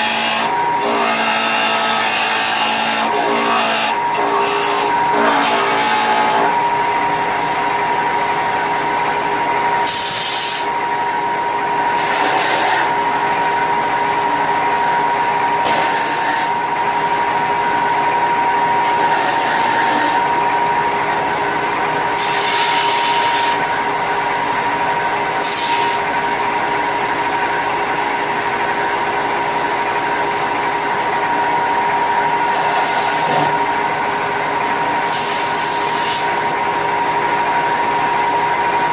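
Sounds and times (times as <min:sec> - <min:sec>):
harsh hissy grinding bursts: 0:12.0 - 0:13.0, 0:15.6 - 0:16.6, 0:18.8 - 0:20.2, 0:22.2 - 0:23.6, 0:32.4 - 0:33.5, 0:35.0 - 0:36.4.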